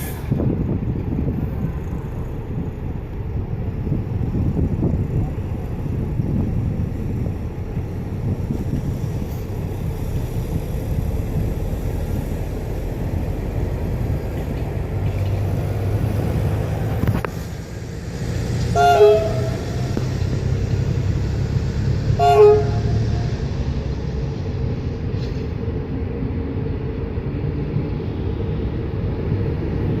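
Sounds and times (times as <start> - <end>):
locomotive rumble and hum: 0.0 - 30.0
train horn toot: 18.6 - 20.2, 22.1 - 23.4.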